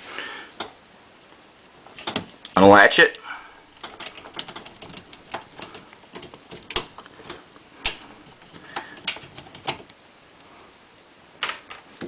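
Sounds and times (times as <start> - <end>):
loud plastic snaps: 7.8 - 8.1.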